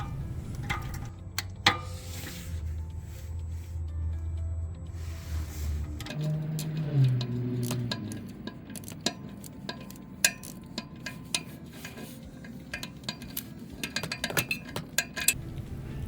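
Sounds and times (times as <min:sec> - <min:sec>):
wrench clicking on bolts: 0:06.0 - 0:15.4.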